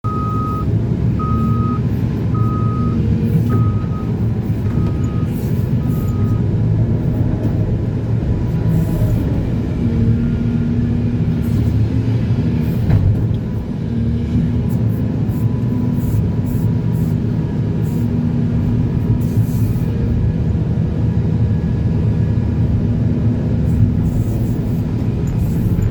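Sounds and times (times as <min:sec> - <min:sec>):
reversing alarm beeping: 0:00.0 - 0:06.4
diesel machinery running: 0:00.0 - 0:25.9.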